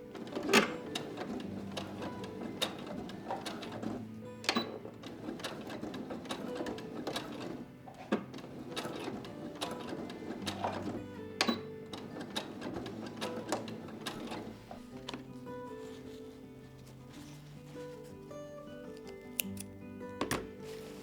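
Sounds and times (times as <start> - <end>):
sewing machine stitching: 0.0 - 16.2
soft background music: 0.0 - 21.0.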